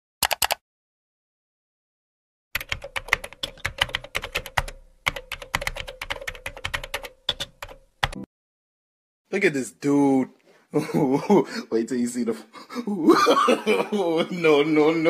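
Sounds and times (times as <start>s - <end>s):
fast typing on keyboard: 0.2s - 0.6s, 2.6s - 8.2s.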